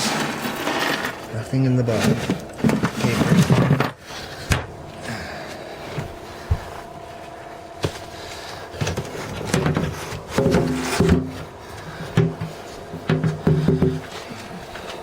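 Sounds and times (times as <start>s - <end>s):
drawers and cabinet doors closing: 0.0s - 1.3s
rattling and creaking: 0.0s - 4.8s.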